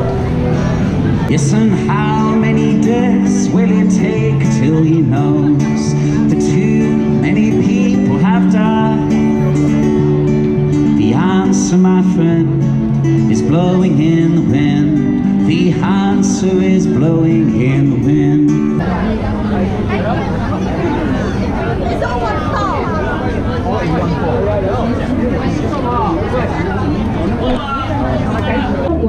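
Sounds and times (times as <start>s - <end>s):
strummed acoustic guitar: 0.0s - 21.6s
person singing: 1.3s - 10.2s, 10.8s - 19.2s.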